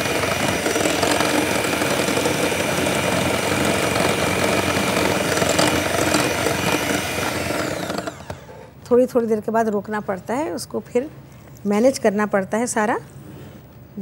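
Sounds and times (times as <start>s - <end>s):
electric mixer running: 0.0s - 8.8s.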